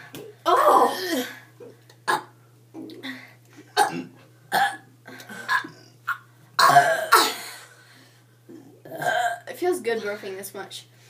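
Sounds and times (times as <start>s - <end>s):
girls burping: 5.5s - 7.5s, 8.8s - 9.4s.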